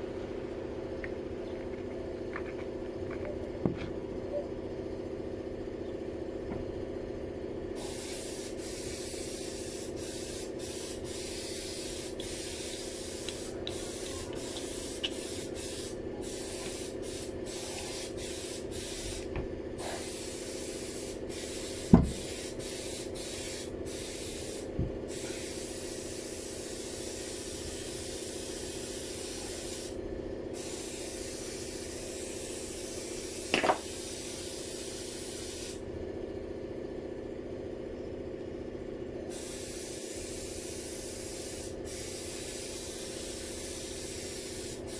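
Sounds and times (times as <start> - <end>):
steady machine hum: 0.0 - 44.9
hissing spray blasts: 7.8 - 35.8, 39.3 - 44.9.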